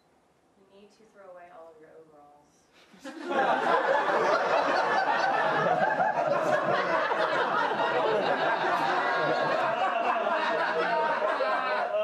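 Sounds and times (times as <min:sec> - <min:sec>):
audience laughing: 0:03.0 - 0:12.0.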